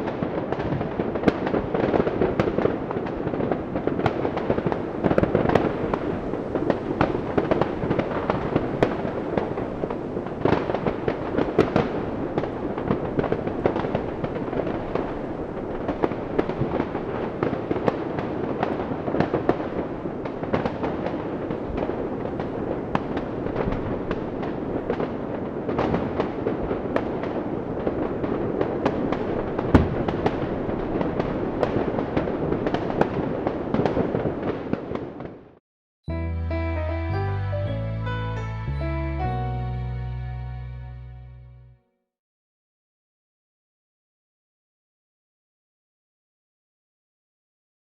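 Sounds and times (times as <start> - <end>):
fireworks crackling and banging: 0.0 - 35.6.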